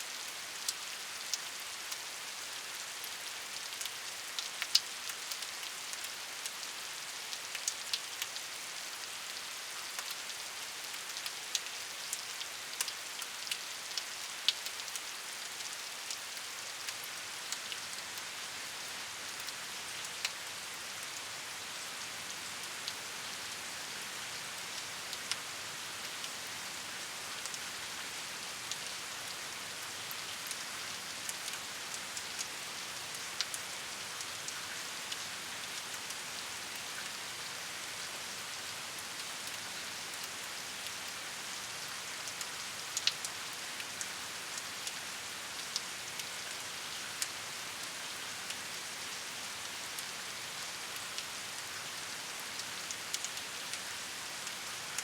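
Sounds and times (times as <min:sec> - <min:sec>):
raindrops ticking on a surface: 0:00.1 - 0:55.0.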